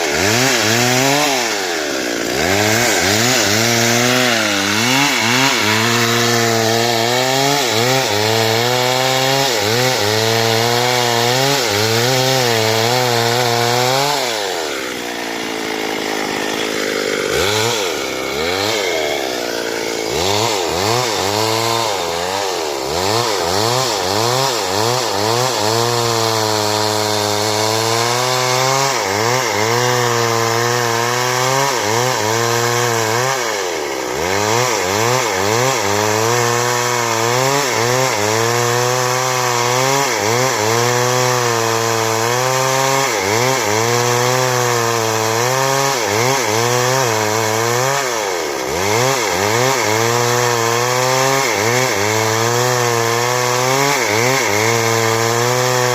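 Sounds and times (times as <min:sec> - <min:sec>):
chainsaw cutting wood: 0:00.0 - 0:55.9.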